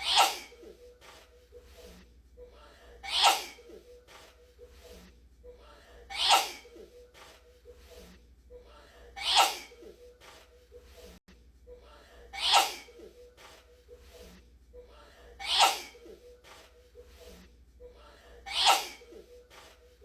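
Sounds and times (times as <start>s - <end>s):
person sneezing: 0.0s - 0.7s, 3.0s - 3.7s, 6.1s - 6.8s, 9.2s - 9.9s, 12.4s - 13.1s, 15.4s - 16.2s, 18.5s - 19.2s.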